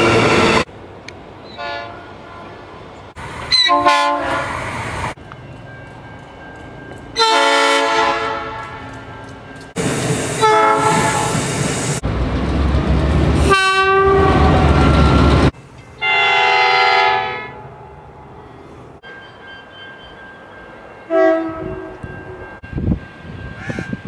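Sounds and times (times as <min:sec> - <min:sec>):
diesel locomotive horn blasts: 0:00.0 - 0:00.7, 0:01.6 - 0:02.8, 0:03.5 - 0:04.8, 0:07.2 - 0:09.2, 0:10.4 - 0:11.5, 0:13.4 - 0:18.4, 0:21.0 - 0:22.6
train passing with wheel clatter: 0:00.0 - 0:24.0.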